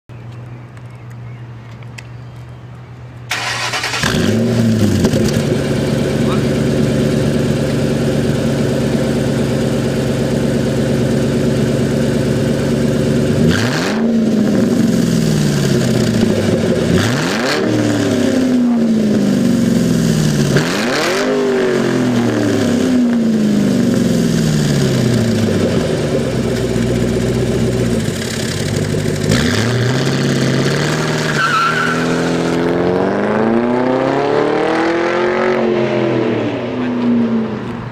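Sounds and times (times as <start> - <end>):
car engine idling and revving: 3.2 - 37.9.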